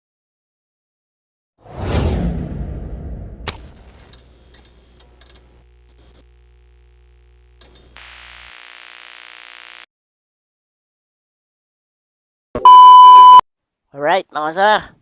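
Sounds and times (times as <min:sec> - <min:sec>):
irregular electronic ticks: 0:04.0 - 0:06.3, 0:07.6 - 0:08.0
synthesized hum and tones: 0:04.0 - 0:09.8.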